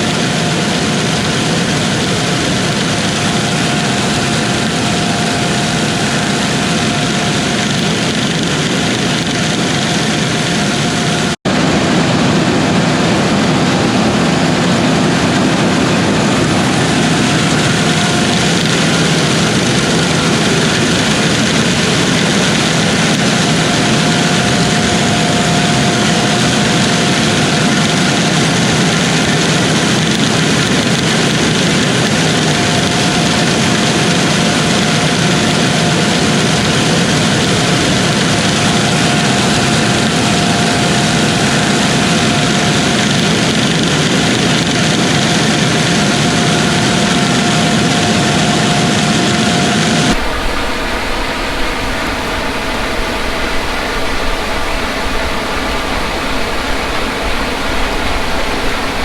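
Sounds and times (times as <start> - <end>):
combine harvester running: 0.0 - 59.0
faint machine whine: 0.0 - 59.0.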